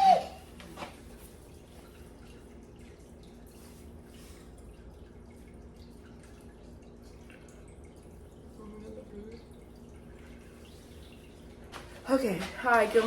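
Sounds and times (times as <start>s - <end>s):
faint steady hum: 0.0s - 13.0s.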